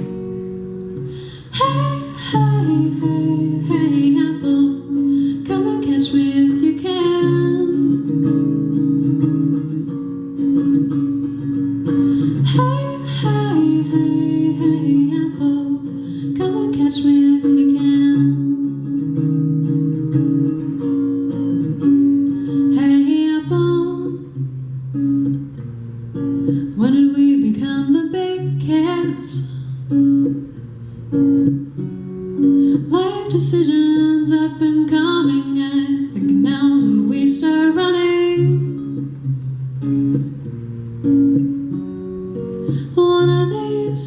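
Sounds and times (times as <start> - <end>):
acoustic guitar strumming: 0.0 - 44.0
woman singing: 1.0 - 9.7, 10.4 - 19.2, 22.0 - 24.5, 26.5 - 29.8, 32.4 - 39.2, 42.4 - 44.0.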